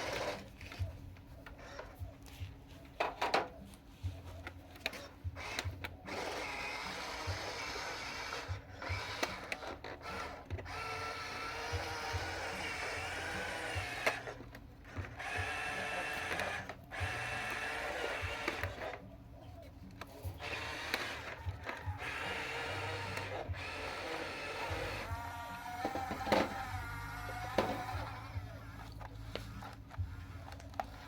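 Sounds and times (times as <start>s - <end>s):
small electric motors whirring: 0.0s - 2.6s, 3.6s - 31.0s.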